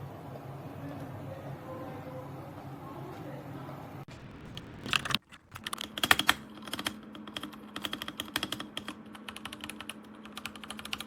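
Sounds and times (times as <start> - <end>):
mechanical keyboard typing: 4.1 - 11.0.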